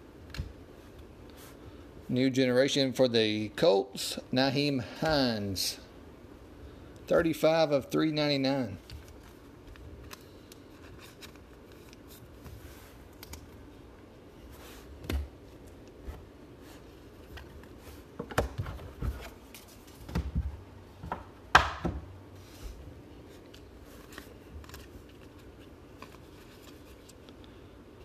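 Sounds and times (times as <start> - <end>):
cards being shuffled and rubbed: 8.8 - 20.1, 22.4 - 27.4.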